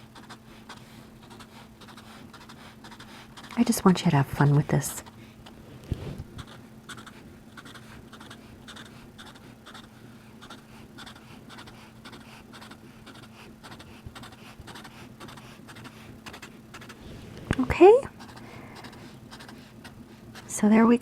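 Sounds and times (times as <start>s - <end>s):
felt-tip marker scratching paper: 0.0s - 4.2s, 6.4s - 17.0s, 18.0s - 20.6s
faint steady hum: 0.0s - 21.0s.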